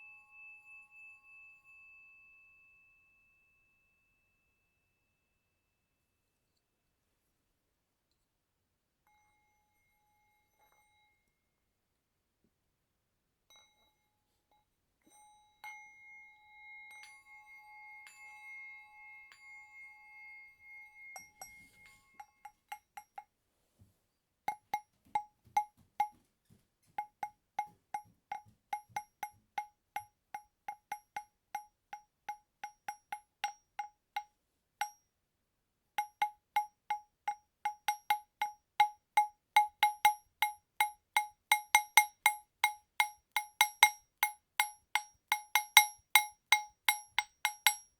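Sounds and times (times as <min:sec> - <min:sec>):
small metal bell ringing: 0:15.1 - 0:23.3, 0:36.0 - 0:47.9.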